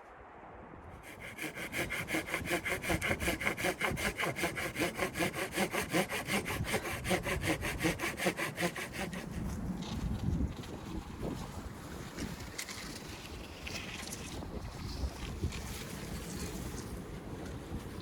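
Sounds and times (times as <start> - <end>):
hand saw cutting wood: 1.0 - 10.0.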